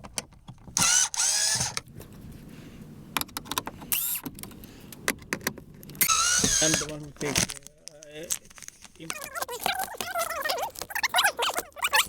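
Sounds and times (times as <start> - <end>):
cordless drill whirring: 0.8 - 1.8, 6.0 - 7.1.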